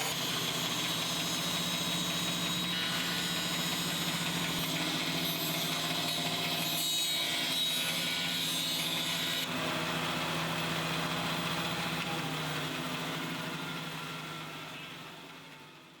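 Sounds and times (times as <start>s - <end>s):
hissing saw cutting: 0.0s - 9.5s
saw motor hum: 0.0s - 15.4s.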